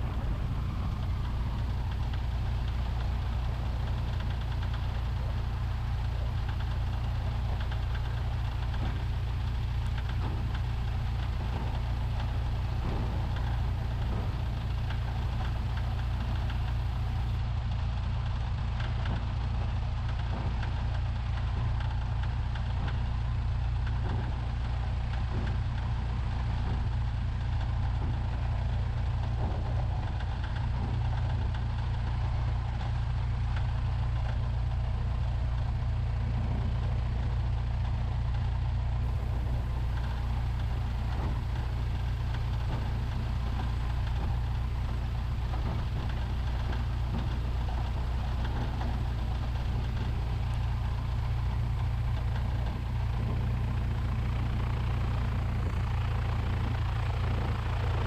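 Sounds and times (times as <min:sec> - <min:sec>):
airplane engine idling: 0:00.0 - 0:17.4, 0:39.0 - 0:58.0.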